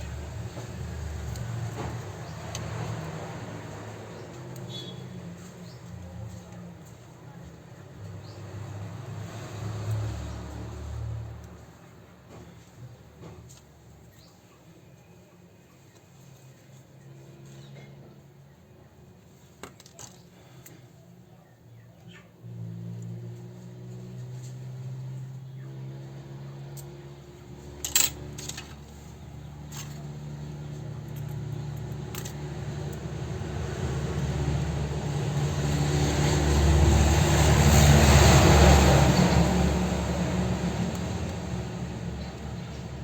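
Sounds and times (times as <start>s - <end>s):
vehicle passing close by: 0.0s - 6.4s, 7.8s - 12.7s, 22.4s - 43.0s
vehicle engine running: 0.0s - 14.2s, 22.1s - 43.0s.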